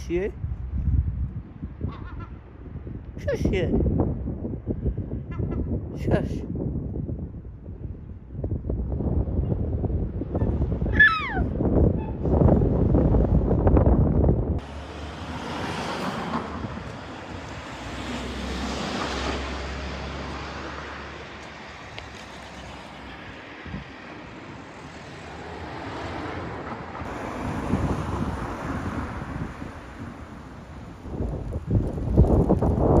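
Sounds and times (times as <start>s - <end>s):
passing road traffic: 0.0s - 3.2s, 7.1s - 33.0s
wind on microphone: 0.0s - 14.6s, 15.3s - 33.0s.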